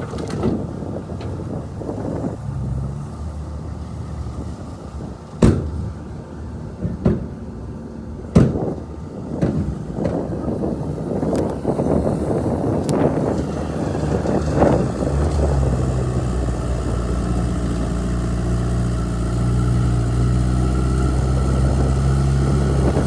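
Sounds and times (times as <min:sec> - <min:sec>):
diesel machinery rumbling: 0:00.0 - 0:23.0.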